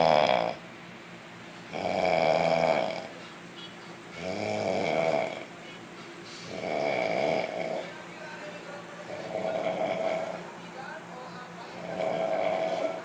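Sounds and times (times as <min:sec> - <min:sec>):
pet snoring: 0:00.0 - 0:00.6, 0:01.7 - 0:03.2, 0:04.2 - 0:05.5, 0:06.4 - 0:08.0, 0:09.1 - 0:10.4, 0:11.7 - 0:13.0.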